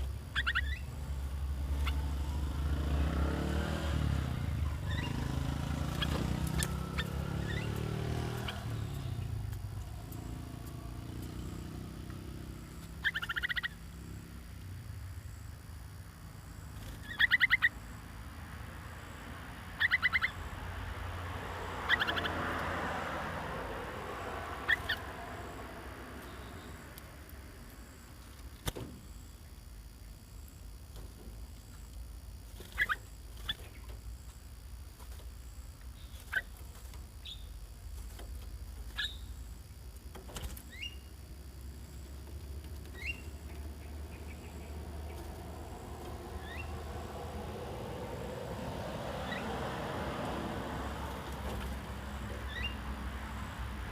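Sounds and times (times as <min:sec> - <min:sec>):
birds chattering calls: 0:00.0 - 0:14.4, 0:16.7 - 0:18.0, 0:19.7 - 0:20.6, 0:21.7 - 0:22.6, 0:24.6 - 0:27.0, 0:32.6 - 0:34.4, 0:35.9 - 0:37.7, 0:38.8 - 0:39.7, 0:40.6 - 0:41.2, 0:41.8 - 0:47.0, 0:51.0 - 0:53.9.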